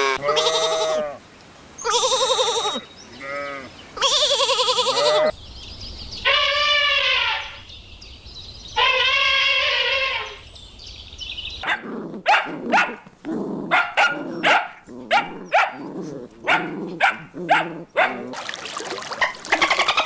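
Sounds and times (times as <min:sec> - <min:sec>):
sheep bleating: 0:00.0 - 0:01.2, 0:01.9 - 0:05.3
dog barking: 0:11.6 - 0:13.1, 0:13.7 - 0:18.3.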